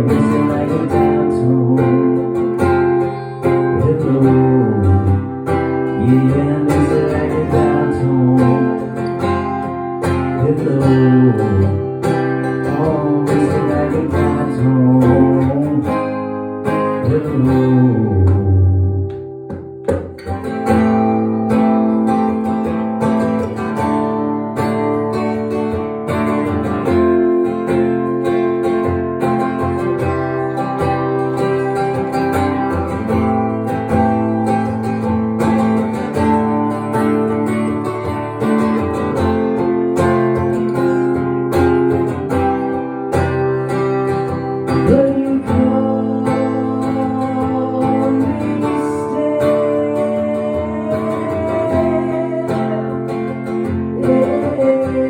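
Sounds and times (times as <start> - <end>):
guitar strumming chords: 0.0 - 55.0.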